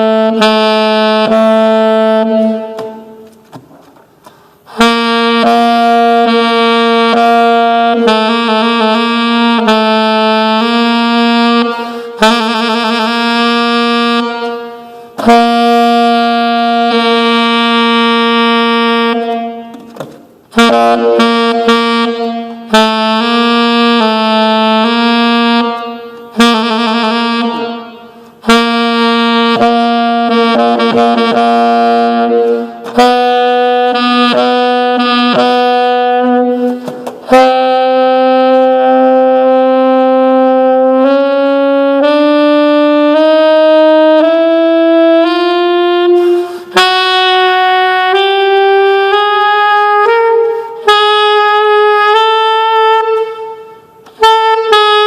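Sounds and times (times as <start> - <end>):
solo saxophone: 0.0 - 55.0
player breathing: 4.2 - 4.7, 46.2 - 46.8.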